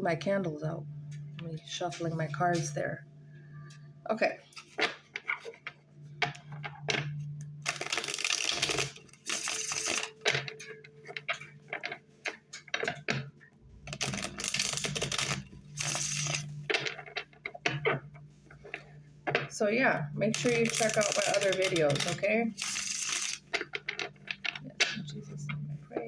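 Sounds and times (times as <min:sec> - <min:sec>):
cards riffling: 0:07.7 - 0:10.1, 0:20.4 - 0:24.0
cards being shuffled: 0:20.4 - 0:23.4.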